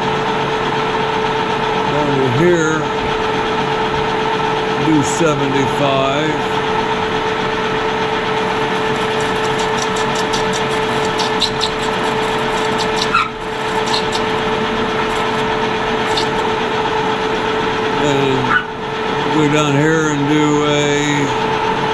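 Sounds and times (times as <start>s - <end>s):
metal lathe humming: 6.4s - 19.4s
cutting tool ticks and scrapes: 8.4s - 16.5s.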